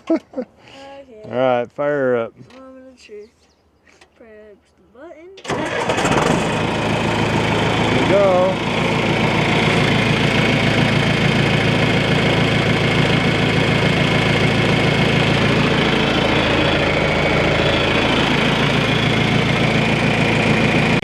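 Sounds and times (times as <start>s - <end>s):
diesel engine idling: 5.4s - 21.0s.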